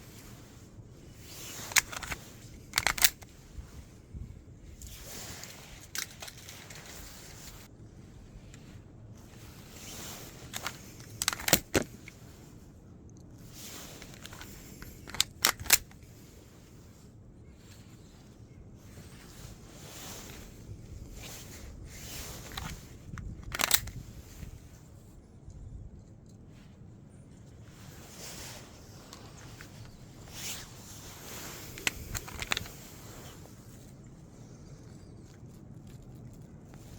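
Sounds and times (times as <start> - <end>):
pistol clicks and clacks: 1.7 - 3.3, 10.5 - 12.0, 14.1 - 16.0, 23.5 - 24.0.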